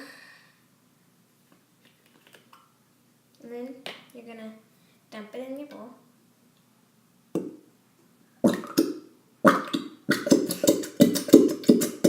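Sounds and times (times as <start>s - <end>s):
glue bottle sputtering and squelching: 8.5s - 12.0s.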